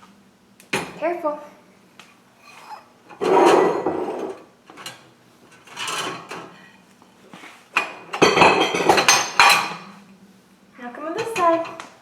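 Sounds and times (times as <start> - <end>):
dishwasher rack and dishes rattling: 2.5 - 6.6, 7.8 - 9.9, 11.1 - 11.8.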